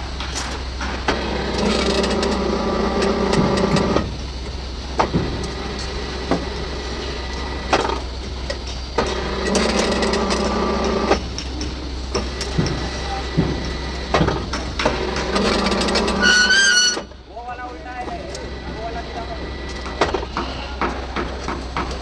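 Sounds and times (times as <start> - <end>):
bending machine motor hum: 0.0 - 22.0
short high squeal: 16.1 - 17.1.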